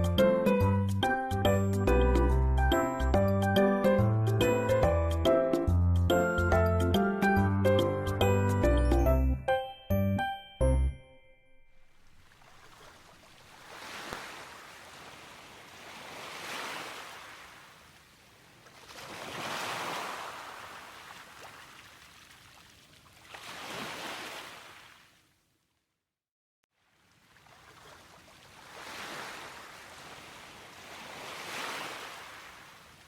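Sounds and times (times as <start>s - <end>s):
gentle sea waves washing in: 11.9s - 25.2s, 26.8s - 33.0s.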